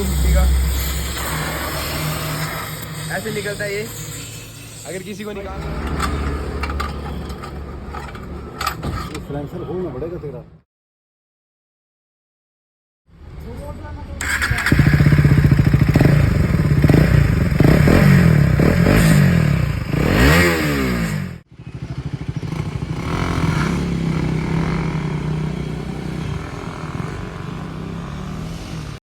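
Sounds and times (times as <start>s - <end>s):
motorcycle engine revving: 14.2s - 29.0s.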